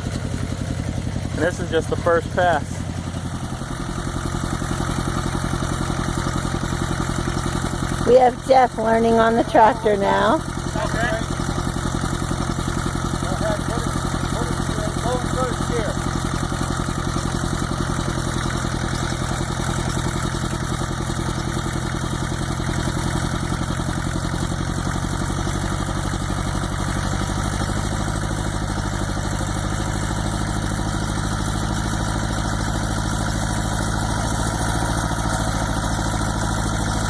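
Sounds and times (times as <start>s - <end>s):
tractor engine running: 0.0s - 37.0s.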